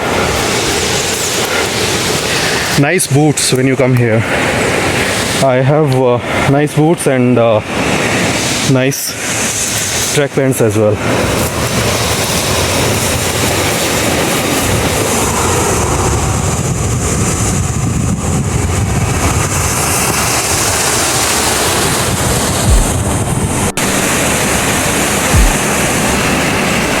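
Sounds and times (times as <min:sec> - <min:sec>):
rushing water roar: 0:00.0 - 0:27.0
low thumps: 0:22.6 - 0:24.6, 0:25.3 - 0:26.0.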